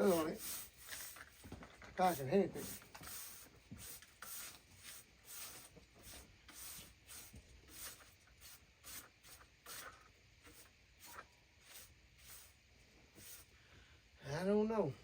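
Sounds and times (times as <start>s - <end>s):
brush scratching log bark: 0.0s - 9.9s.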